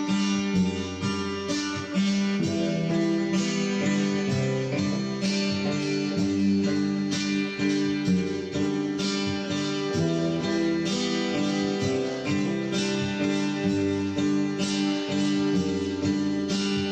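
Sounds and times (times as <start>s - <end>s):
strummed acoustic guitar: 0.0s - 16.9s.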